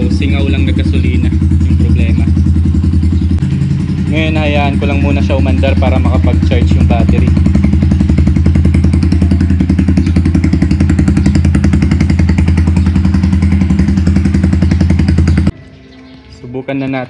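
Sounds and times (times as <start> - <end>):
motorcycle engine idling: 0.0 - 17.0.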